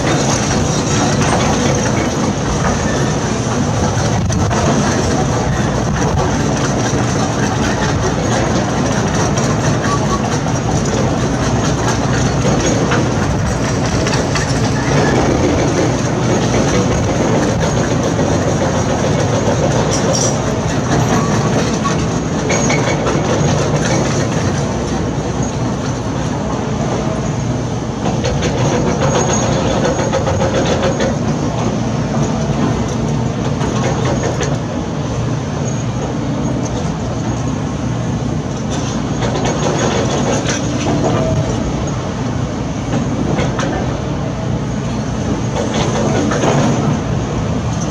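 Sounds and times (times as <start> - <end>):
diesel engine running: 0.0 - 26.9
machinery clattering and clanking: 0.0 - 47.9.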